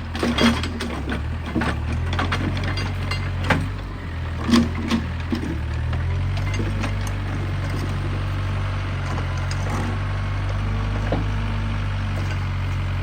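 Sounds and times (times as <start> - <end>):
excavator diesel engine running: 0.0 - 13.0
wooden logs knocking: 0.1 - 8.3.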